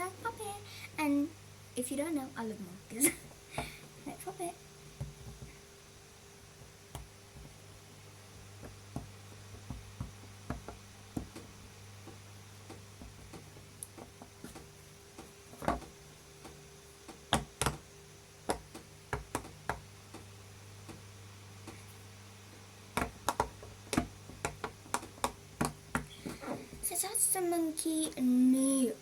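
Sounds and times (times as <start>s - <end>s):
electric fan humming: 0.0s - 29.0s.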